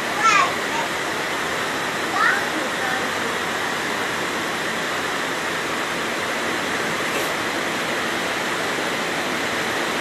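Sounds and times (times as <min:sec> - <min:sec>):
floodwater rushing: 0:00.0 - 0:10.0.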